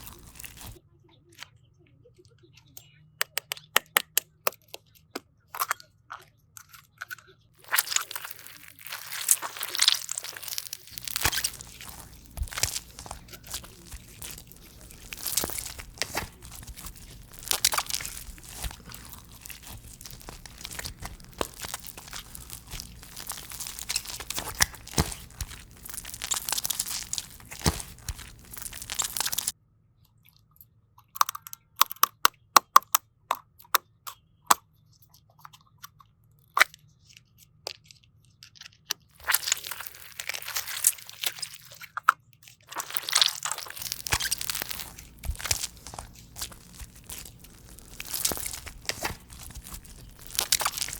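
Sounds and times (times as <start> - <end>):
crunchy slime crackling: 0.0 - 0.8, 7.6 - 29.6, 39.2 - 42.0, 42.7 - 50.9
sharp clicks and snaps: 3.2 - 4.8.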